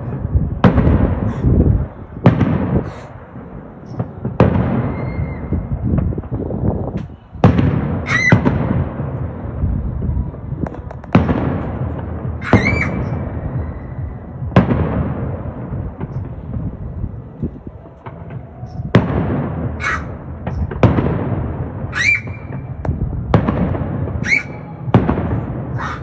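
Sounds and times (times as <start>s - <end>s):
fireworks booming: 0.0s - 26.0s
wavering high whistle: 4.9s - 5.7s, 12.4s - 14.4s, 21.9s - 22.6s, 24.2s - 24.7s.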